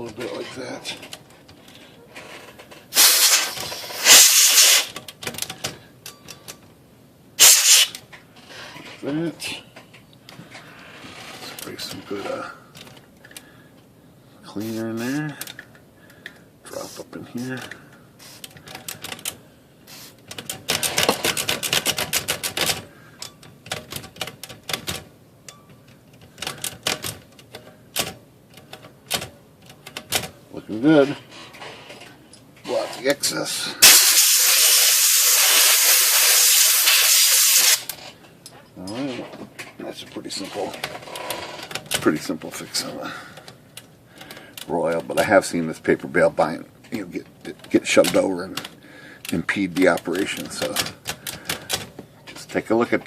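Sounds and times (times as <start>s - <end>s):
aerosol spray hissing: 3.0s - 4.9s, 7.4s - 7.9s, 33.8s - 37.9s
typewriter mechanism clicking: 20.3s - 22.8s.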